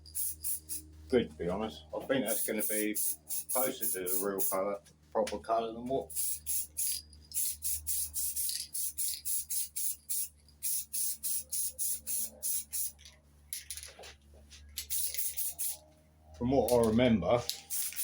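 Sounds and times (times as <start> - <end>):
aerosol spray can hissing: 0.0 - 0.9, 2.3 - 4.6, 6.0 - 13.0, 14.8 - 15.8, 17.5 - 18.0.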